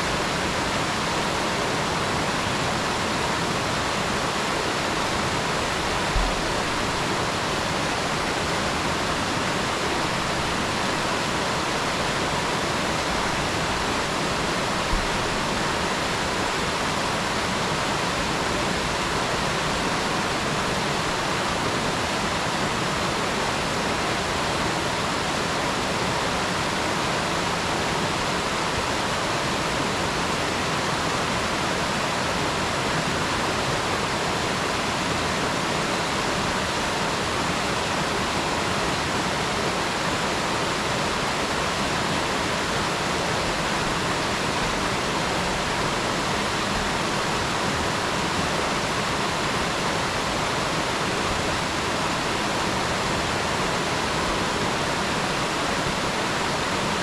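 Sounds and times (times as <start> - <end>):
stream rushing over rocks: 0.0 - 57.0.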